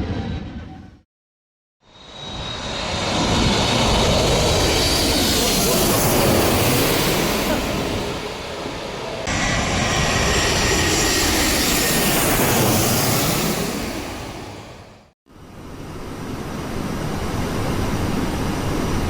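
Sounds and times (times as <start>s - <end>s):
airplane flying by: 1.8s - 15.1s.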